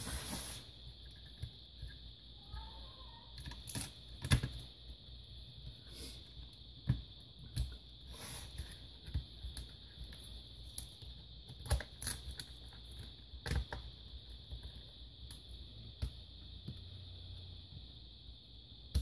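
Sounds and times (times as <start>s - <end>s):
plastic laptop parts clicking: 3.4s - 4.6s.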